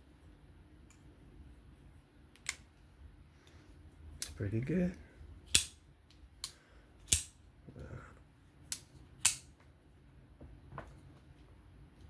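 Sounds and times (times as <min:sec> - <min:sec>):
folding knife blade snapping: 0:05.5 - 0:05.8, 0:06.4 - 0:07.3, 0:08.7 - 0:09.5.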